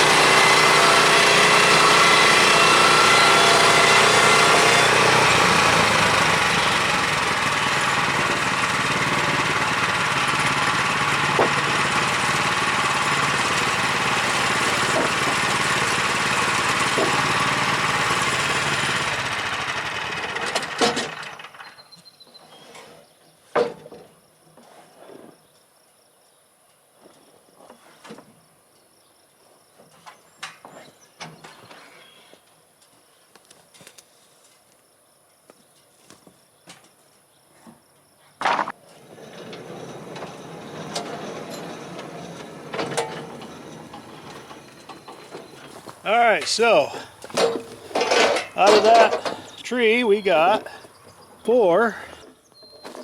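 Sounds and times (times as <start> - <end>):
gas engine running: 0.0 - 21.6, 38.5 - 52.2.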